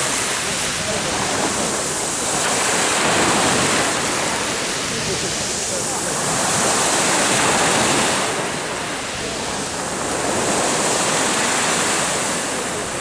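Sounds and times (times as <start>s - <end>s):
waves washing onto shore: 0.0s - 13.0s.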